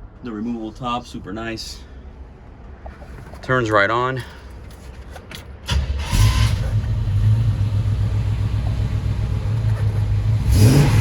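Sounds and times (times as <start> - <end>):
car engine idling and revving: 5.6 - 11.0.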